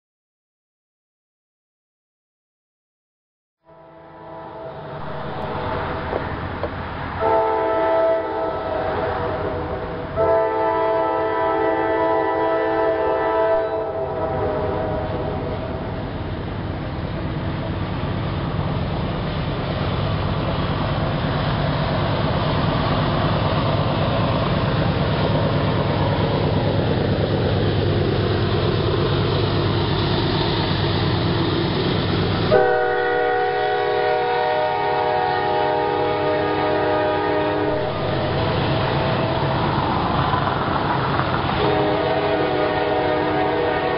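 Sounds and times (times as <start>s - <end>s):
train air horn chord: 3.6s - 6.0s, 7.2s - 15.8s, 32.5s - 39.4s, 41.6s - 43.9s
train wheel and rail noise: 3.9s - 43.9s
diesel engines rumbling: 4.6s - 10.7s, 14.0s - 43.9s.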